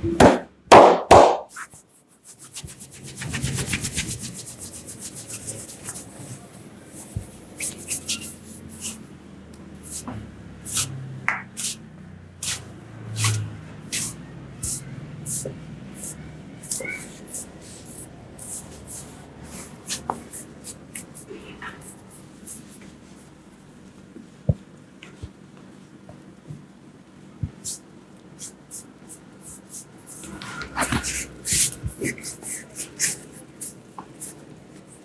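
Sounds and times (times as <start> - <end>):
hand strikes on body: 0.2 - 1.5
rapid tapping strokes: 0.7 - 6.1
hands rubbing skin and hair: 1.2 - 9.1, 10.7 - 11.8, 13.2 - 23.3, 28.4 - 35.0.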